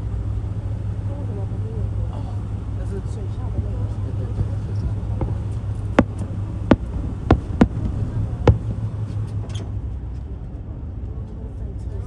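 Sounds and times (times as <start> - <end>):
steady low hum: 0.0 - 9.1
fireworks popping: 3.6 - 9.2.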